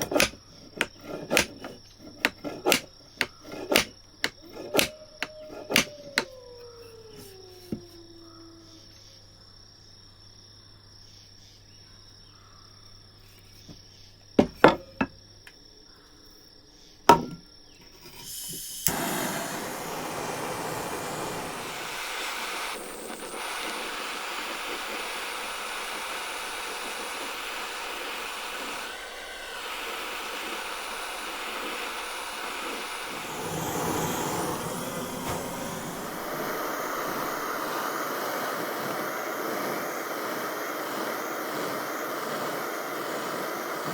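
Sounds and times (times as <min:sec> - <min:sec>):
steady hissing rush: 0:18.2 - 0:43.9.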